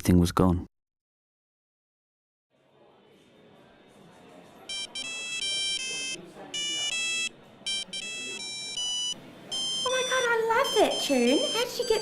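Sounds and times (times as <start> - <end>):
monophonic phone ringtone: 4.7 - 12.0.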